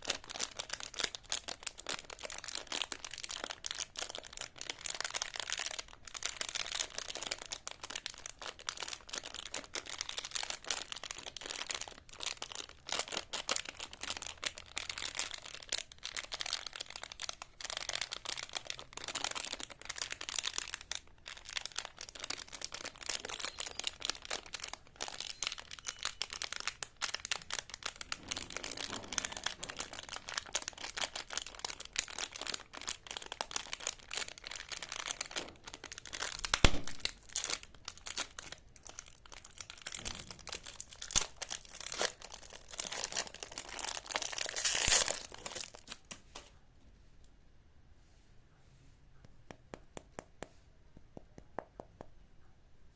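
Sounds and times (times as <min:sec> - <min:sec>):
crinkly candy wrapper crackling: 0:00.0 - 0:46.5.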